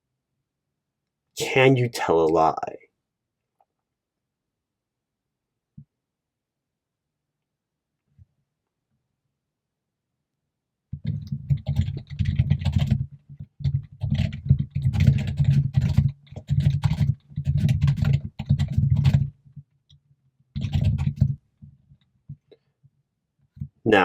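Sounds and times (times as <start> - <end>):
rapid typing on computer keyboard: 10.9 - 19.6, 20.6 - 21.4.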